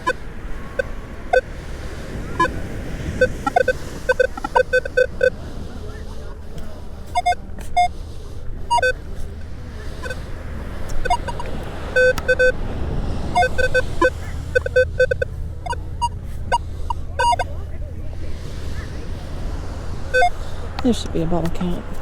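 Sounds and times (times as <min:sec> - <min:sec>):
metal detector beeps: 0:00.0 - 0:01.5, 0:02.2 - 0:02.6, 0:03.2 - 0:05.3, 0:07.1 - 0:07.9, 0:08.7 - 0:09.0, 0:10.0 - 0:10.2, 0:10.9 - 0:12.6, 0:13.3 - 0:17.6, 0:20.0 - 0:20.9
steady low rumble: 0:00.0 - 0:22.0.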